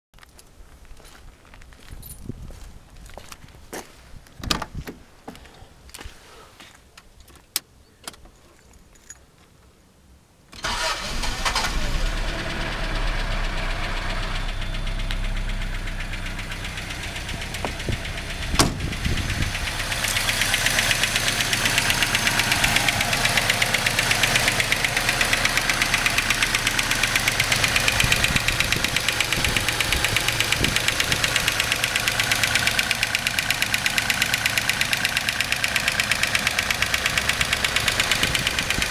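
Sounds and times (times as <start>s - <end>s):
car engine cranking and starting: 10.5s - 38.9s
engine ticking noise: 10.6s - 38.9s.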